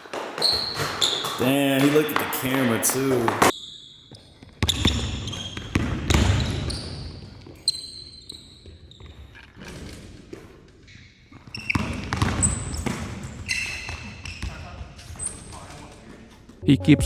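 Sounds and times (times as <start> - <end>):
basketball bouncing on court: 0.1 - 3.5, 4.4 - 7.2, 11.5 - 13.4
players' voices: 1.4 - 3.5, 16.6 - 17.0.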